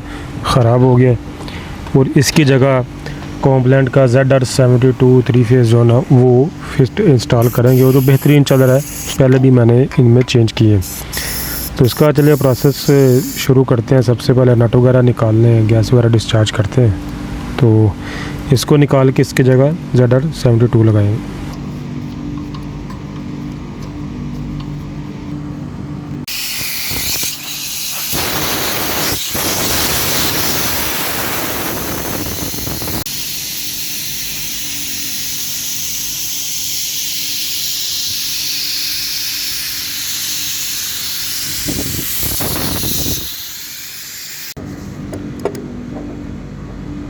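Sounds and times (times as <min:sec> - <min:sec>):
steady low hum: 0:00.0 - 0:36.2, 0:44.5 - 0:47.0
refrigerant gas hissing: 0:06.5 - 0:09.3, 0:10.7 - 0:13.5, 0:26.2 - 0:44.6.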